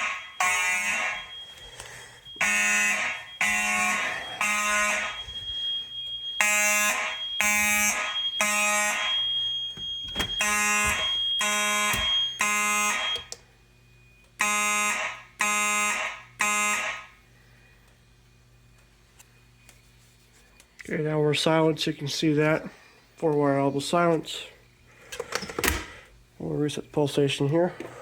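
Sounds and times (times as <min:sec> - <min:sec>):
steady high-pitched electronic tone: 0:00.0 - 0:13.1
fire alarm horn blasts: 0:00.0 - 0:13.4, 0:14.3 - 0:17.3.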